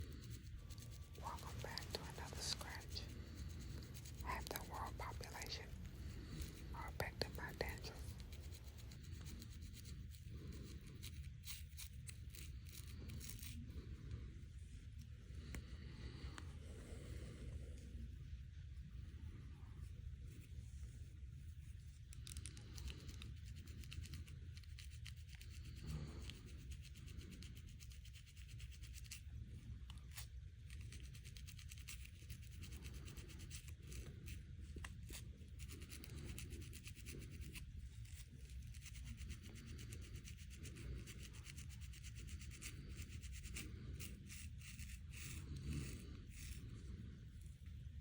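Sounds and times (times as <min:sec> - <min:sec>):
fingernails scratching scalp: 0:00.0 - 0:13.7, 0:29.9 - 0:47.2.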